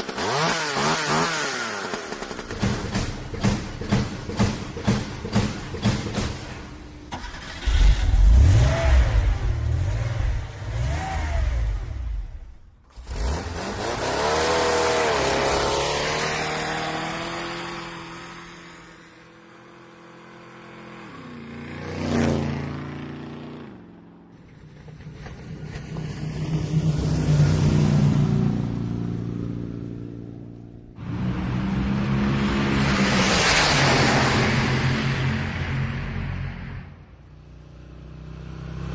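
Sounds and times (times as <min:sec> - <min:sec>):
engine revving: 0:00.0 - 0:04.4, 0:07.1 - 0:23.8
vehicle engines passing: 0:12.9 - 0:38.9.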